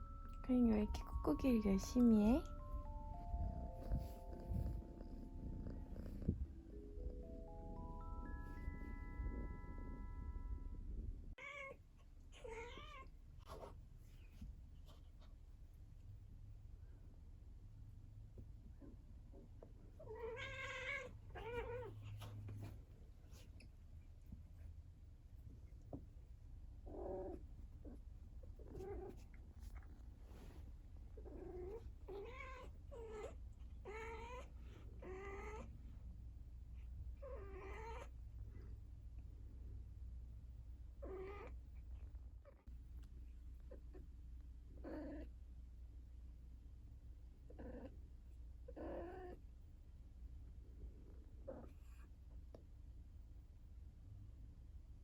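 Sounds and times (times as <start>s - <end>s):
cat purring: 0.0s - 11.7s, 26.7s - 39.9s, 41.0s - 45.7s, 47.3s - 49.6s, 50.4s - 52.6s.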